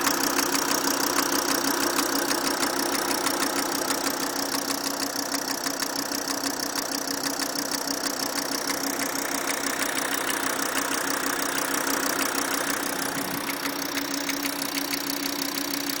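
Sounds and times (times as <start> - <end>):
diesel engine idling: 0.0 - 16.0
fast even ticking knock: 8.6 - 16.0.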